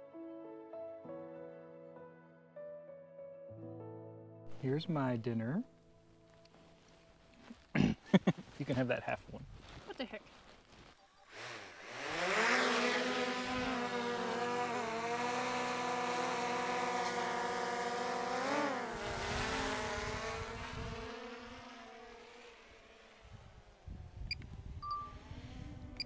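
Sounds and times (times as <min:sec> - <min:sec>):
drone propellers whining: 0:11.3 - 0:26.0.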